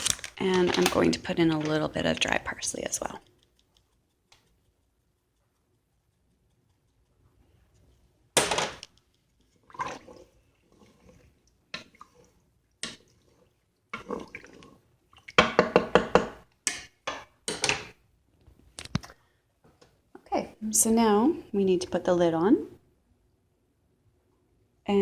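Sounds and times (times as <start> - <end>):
liquid sloshing: 9.3 - 15.8
knocks on pot: 15.4 - 16.4.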